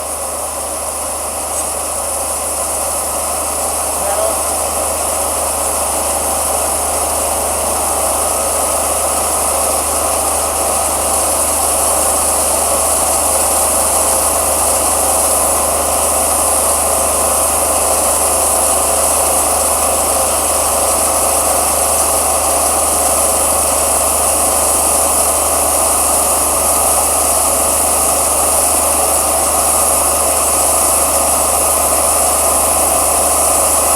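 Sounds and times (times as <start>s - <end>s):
diesel engine running: 0.0s - 33.9s
band saw blade cutting log: 1.4s - 2.3s.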